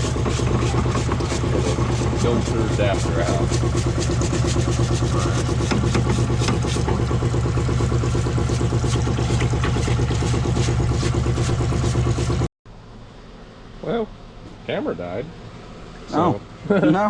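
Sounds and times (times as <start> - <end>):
machine humming with fast pulse: 0.0 - 13.4
clicks and scrapes: 0.2 - 7.0.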